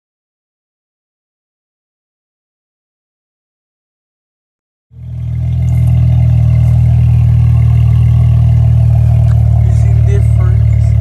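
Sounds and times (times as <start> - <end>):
car engine idling: 5.0 - 11.0.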